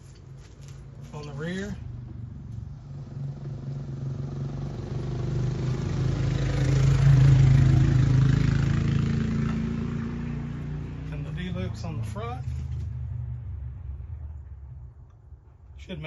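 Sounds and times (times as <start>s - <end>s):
vehicle engine passing by: 0.9s - 16.0s.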